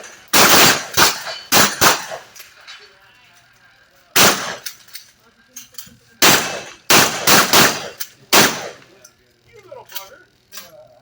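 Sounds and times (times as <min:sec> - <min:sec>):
shotgun shots with echo: 0:00.3 - 0:02.3, 0:04.2 - 0:04.6, 0:06.2 - 0:08.8.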